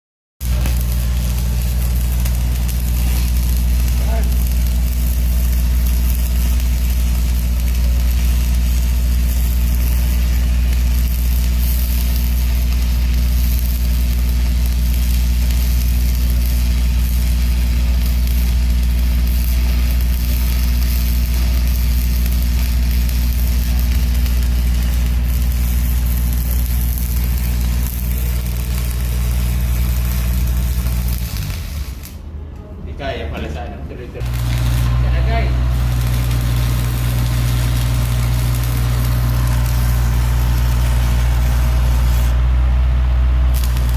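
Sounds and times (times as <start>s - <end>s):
welding machine humming: 0.4s - 32.3s, 34.2s - 43.9s.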